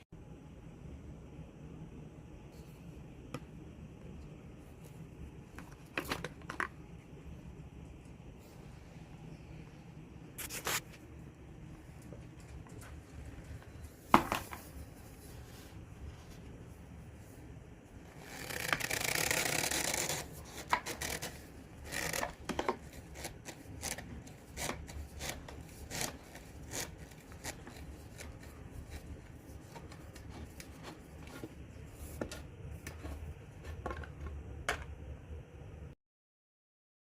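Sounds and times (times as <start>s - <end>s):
broom parts scraping: 18.2s - 34.4s.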